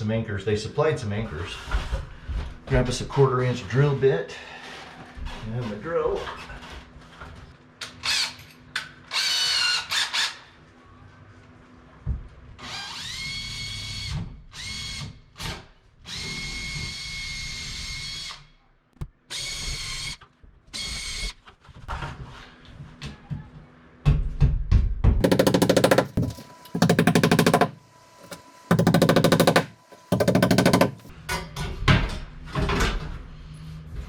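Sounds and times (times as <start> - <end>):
electric drill boring into ceiling: 25.2 - 31.1
loud fast rattle: 25.2 - 31.1.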